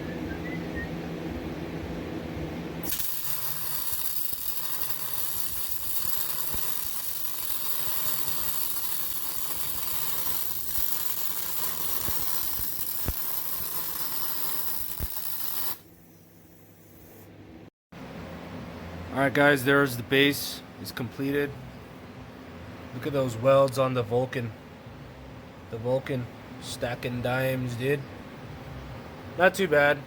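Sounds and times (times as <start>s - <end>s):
welder arc crackling sizzle: 2.8s - 17.3s.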